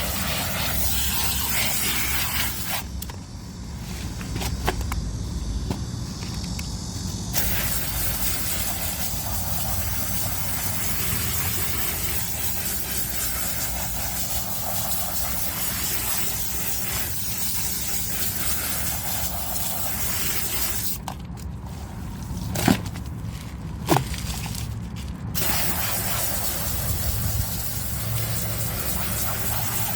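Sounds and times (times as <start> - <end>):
water spraying: 0.0 - 2.9, 7.4 - 21.0, 25.4 - 29.9.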